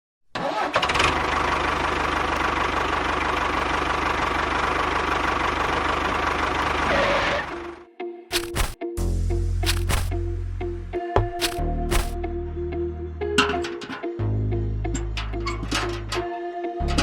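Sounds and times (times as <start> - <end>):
small engine puttering: 0.4 - 8.8, 9.6 - 10.1, 11.4 - 12.2.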